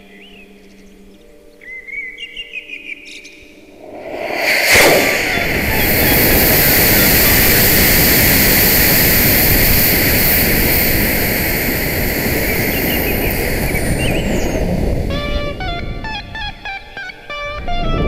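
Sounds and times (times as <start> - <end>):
model rocket rushing: 3.8 - 15.6.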